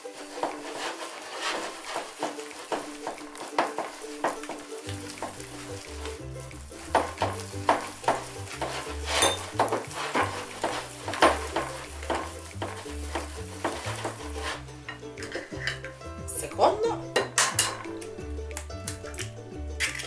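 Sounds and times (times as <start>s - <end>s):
utensil scraping a bowl: 0.0s - 16.0s
background music: 0.0s - 20.0s.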